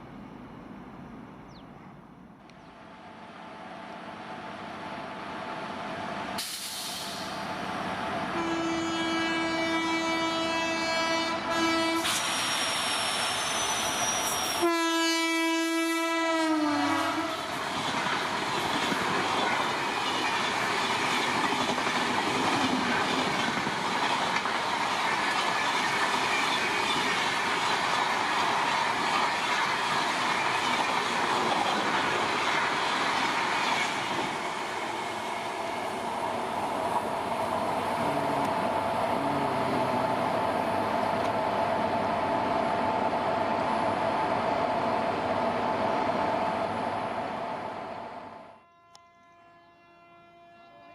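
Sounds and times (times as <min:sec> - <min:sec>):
train passing at high speed: 0:02.3 - 0:48.6
locomotive horn blasts: 0:08.3 - 0:12.2, 0:14.6 - 0:17.5, 0:48.6 - 0:50.9.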